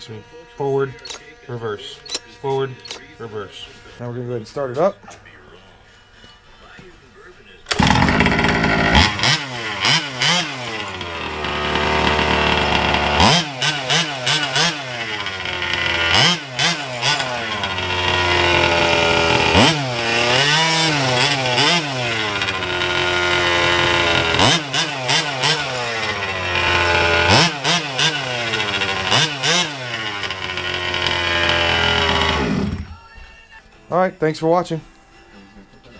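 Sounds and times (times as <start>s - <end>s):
small two-stroke engine revving: 7.7s - 33.0s.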